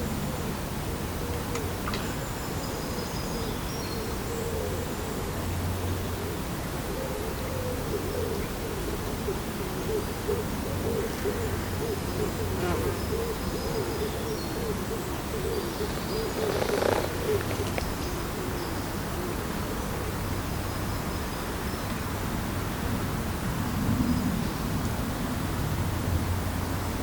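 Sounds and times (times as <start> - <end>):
steady outdoor hiss: 0.0 - 27.0
animal's low call: 14.6 - 18.6
rustle or splash: 15.8 - 19.7.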